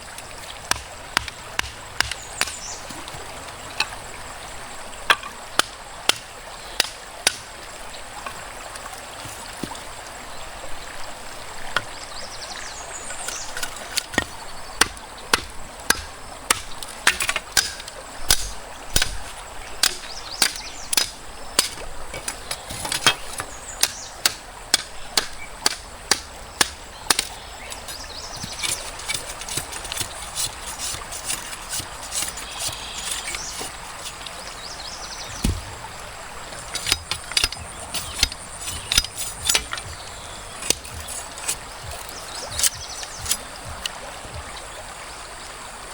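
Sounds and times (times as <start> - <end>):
stream rushing: 0.0 - 45.9
sharp chopping strikes: 14.2 - 19.2, 23.8 - 34.3, 35.3 - 35.8, 36.8 - 44.5.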